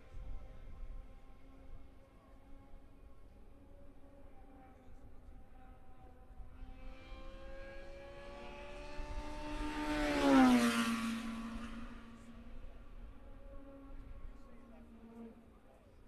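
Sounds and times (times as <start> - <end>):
distant race car engines: 0.0 - 16.0
race car passing at speed: 4.2 - 15.6.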